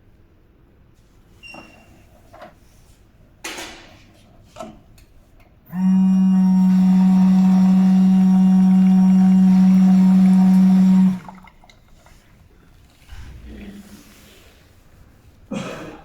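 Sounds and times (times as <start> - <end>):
vending machine electric hum: 4.2 - 11.7.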